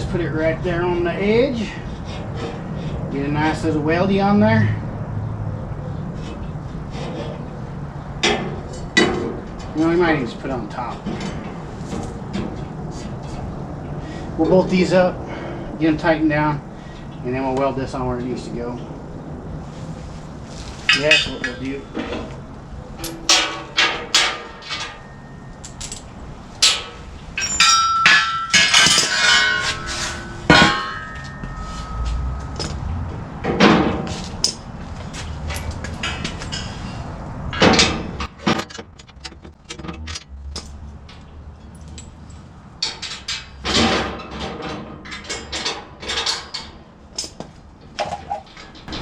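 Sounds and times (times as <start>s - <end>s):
metal clanks and knocks: 8.2s - 9.8s, 10.8s - 13.5s, 20.8s - 49.0s
metal scraping: 19.6s - 46.6s
ringing metal clangs: 20.9s - 34.7s.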